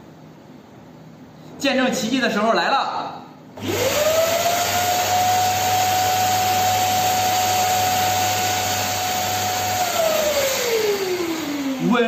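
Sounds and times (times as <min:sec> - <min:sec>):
vacuum cleaner whining: 0:03.6 - 0:12.0.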